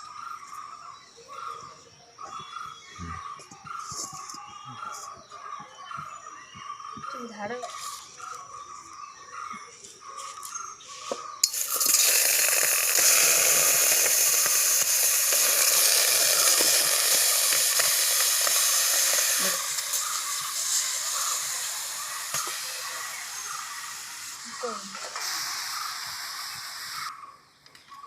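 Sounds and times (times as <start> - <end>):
food sizzling in a hot pan: 11.4 - 27.1.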